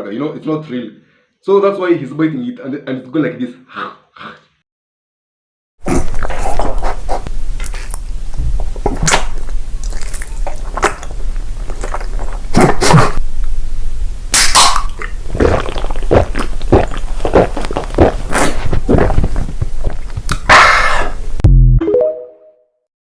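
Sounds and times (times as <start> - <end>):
close eating and chewing: 5.9 - 13.2, 15.0 - 21.2.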